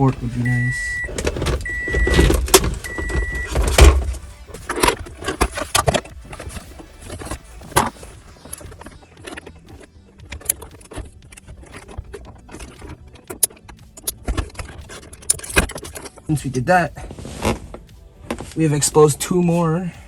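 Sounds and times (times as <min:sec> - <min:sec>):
short electronic beep: 0:00.4 - 0:03.6.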